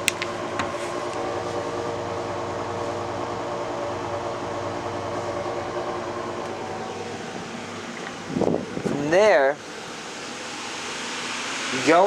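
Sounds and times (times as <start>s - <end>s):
machine humming: 0.0s - 12.0s.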